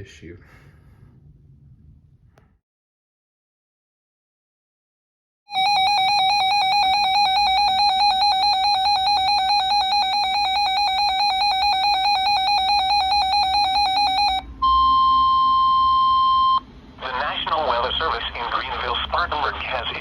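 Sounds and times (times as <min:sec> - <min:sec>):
electronic alarm warble: 0:05.5 - 0:16.7
steady warning tone: 0:05.5 - 0:20.0.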